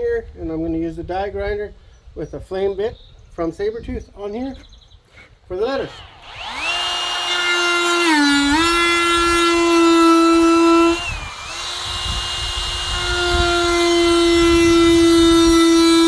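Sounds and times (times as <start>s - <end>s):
die grinder cutting wood: 5.7s - 16.0s.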